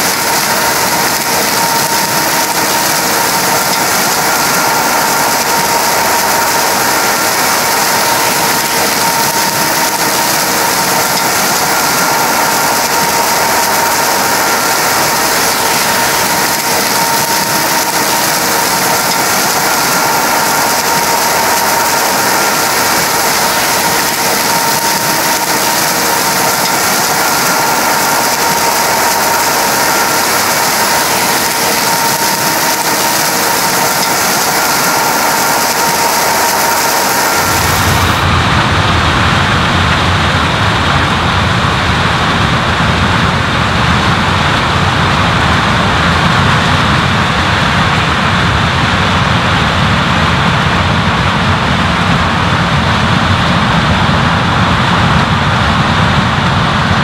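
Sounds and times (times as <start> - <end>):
heavy farm machinery running: 0.0 - 57.0
high mechanical whine: 0.0 - 57.0.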